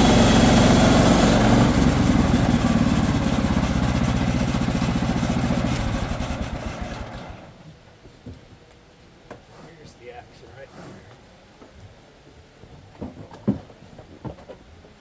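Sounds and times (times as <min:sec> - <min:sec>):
sawmill engine running: 0:00.0 - 0:07.6.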